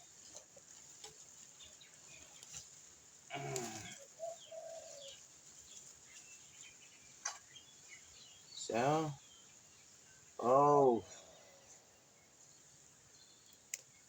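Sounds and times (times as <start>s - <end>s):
bird cooing: 3.3s - 5.2s
faint bird chirps: 3.3s - 14.0s.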